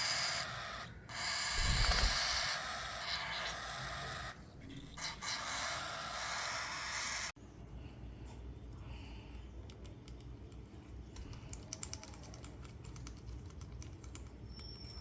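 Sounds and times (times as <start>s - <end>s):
chicks raspy begging calls: 0.0s - 4.4s, 5.0s - 7.3s.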